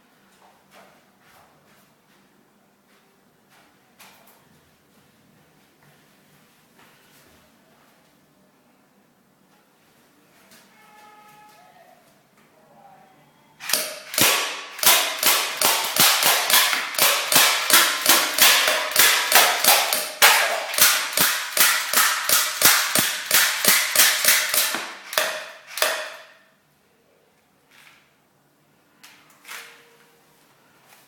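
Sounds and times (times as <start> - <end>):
airsoft pistol rapid shots: 13.6 - 26.4.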